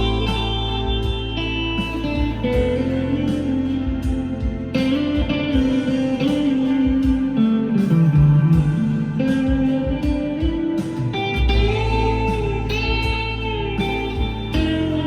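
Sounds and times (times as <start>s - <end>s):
clean electric guitar melody: 0.0s - 15.0s.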